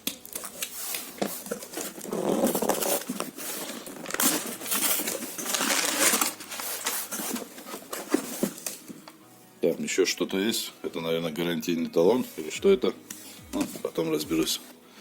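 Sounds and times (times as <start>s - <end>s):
packaging rustling and crinkling: 0.0s - 9.0s.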